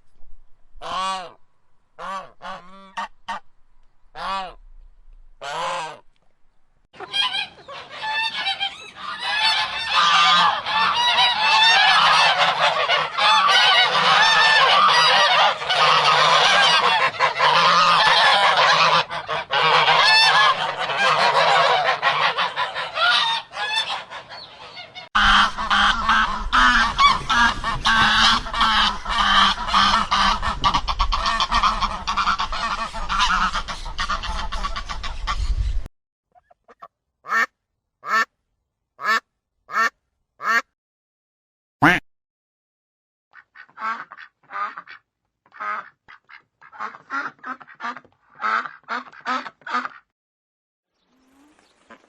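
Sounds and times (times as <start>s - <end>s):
geese honking: 0.8s - 1.4s, 2.0s - 3.5s, 4.2s - 4.6s, 5.4s - 6.1s, 7.0s - 35.5s.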